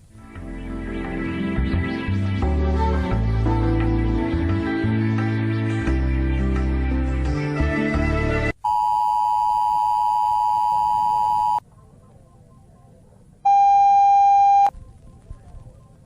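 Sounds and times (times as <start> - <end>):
dual alert tone: 8.6 - 11.6, 13.5 - 14.7
low buzzy beep: 8.6 - 11.6, 13.4 - 14.7.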